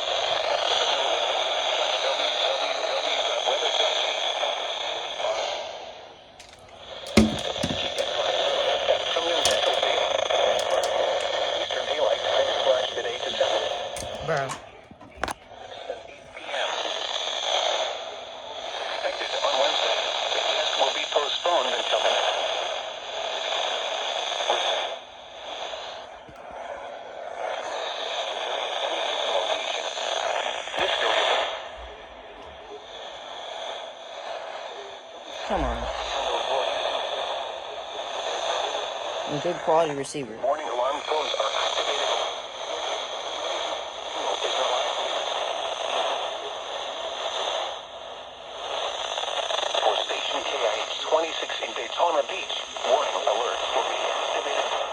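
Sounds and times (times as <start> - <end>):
radio static hiss: 0.0 - 5.6, 6.4 - 54.9.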